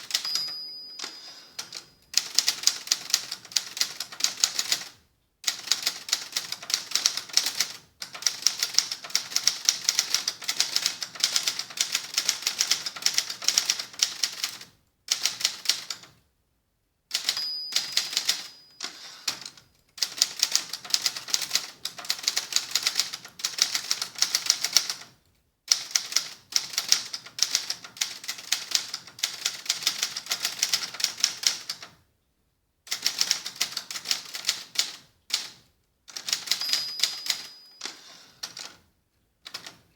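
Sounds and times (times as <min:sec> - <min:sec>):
typewriter bell ringing: 0:00.0 - 0:02.6, 0:17.1 - 0:19.5, 0:36.3 - 0:38.6
manual typewriter typing: 0:00.0 - 0:16.2, 0:17.1 - 0:25.1, 0:25.7 - 0:31.9, 0:32.9 - 0:38.8, 0:39.5 - 0:39.8.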